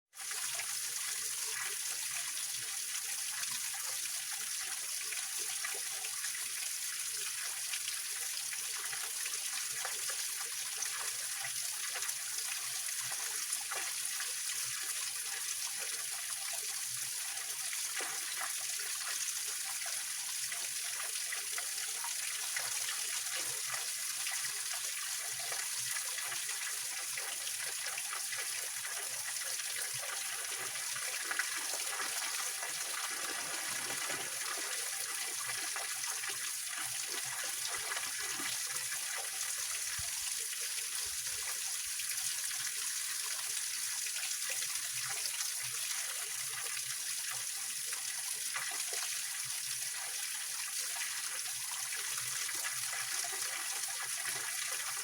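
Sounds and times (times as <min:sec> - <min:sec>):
water rushing over rocks: 0:31.2 - 0:34.8.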